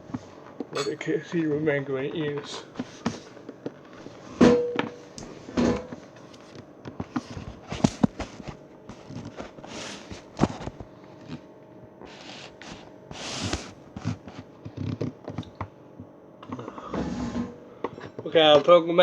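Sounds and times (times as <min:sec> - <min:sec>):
dishes and containers clattering: 0:00.7 - 0:01.1.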